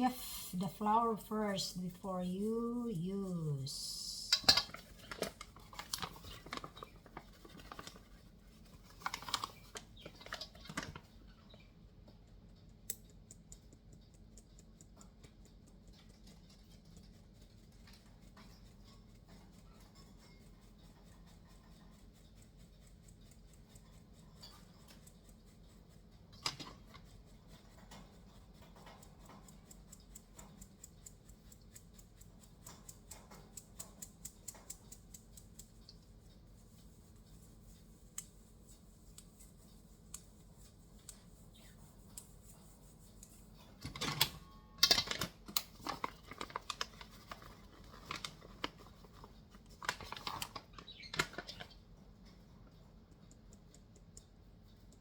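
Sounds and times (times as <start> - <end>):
flour sifter clicking: 3.7 - 11.1, 37.2 - 51.8.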